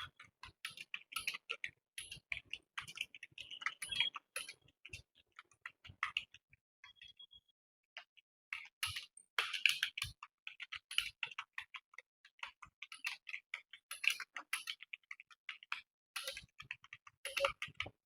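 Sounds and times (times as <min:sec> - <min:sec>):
computer keyboard typing: 0:13.3 - 0:18.0.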